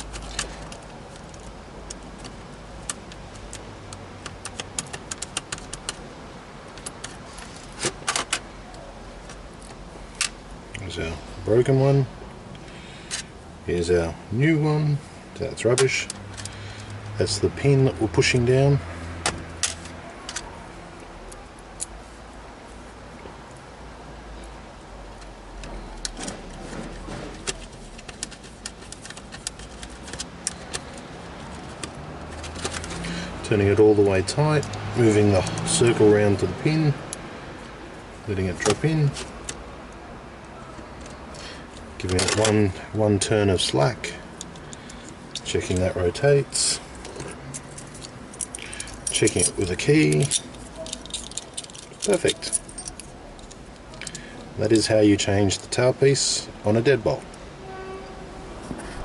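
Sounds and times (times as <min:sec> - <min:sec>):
metallic lock parts clicking: 0:00.0 - 0:06.1, 0:06.7 - 0:10.5, 0:19.2 - 0:20.6, 0:25.2 - 0:36.4, 0:38.3 - 0:42.8, 0:43.6 - 0:46.0, 0:47.0 - 0:54.3
lock pick clicking on metal: 0:47.5 - 0:54.2.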